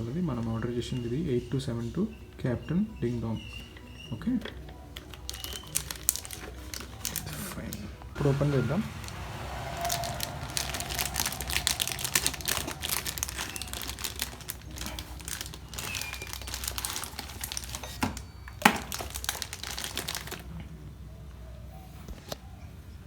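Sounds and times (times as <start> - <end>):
packaging crinkling and rustling: 3.4 - 20.8
sharp packaging snap: 13.4 - 20.4.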